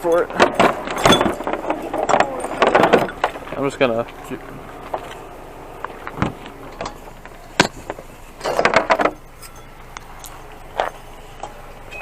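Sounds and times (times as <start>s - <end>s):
objects clattering: 0.0s - 11.6s
objects knocking: 0.1s - 3.6s, 5.9s - 9.2s.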